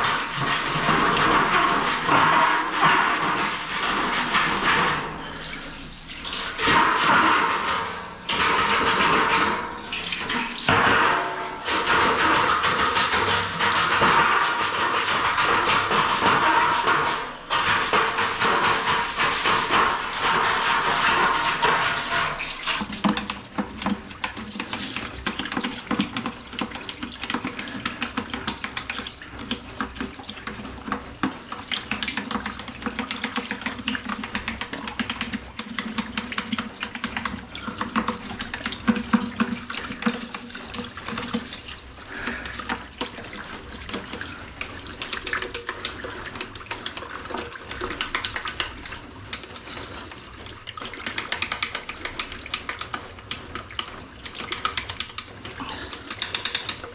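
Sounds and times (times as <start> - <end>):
scrubbing and scraping parts: 0.0 - 26.4
water running from a tap: 0.0 - 56.9.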